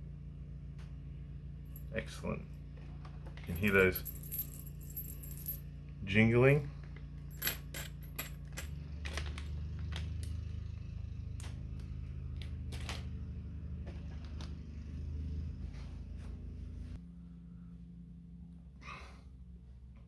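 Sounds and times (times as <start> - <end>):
low steady hum: 3.5 - 5.6
metal tokens clinking: 3.5 - 5.6, 7.3 - 8.8.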